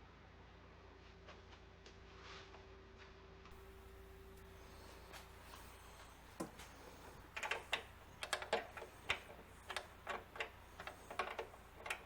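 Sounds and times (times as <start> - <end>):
hand ratchet clicking: 3.6 - 12.0.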